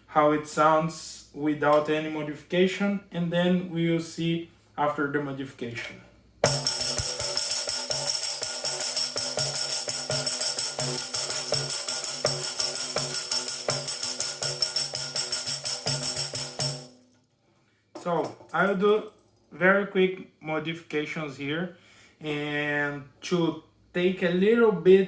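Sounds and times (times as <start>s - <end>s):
tambourine jingles: 6.4s - 17.2s, 18.0s - 19.6s.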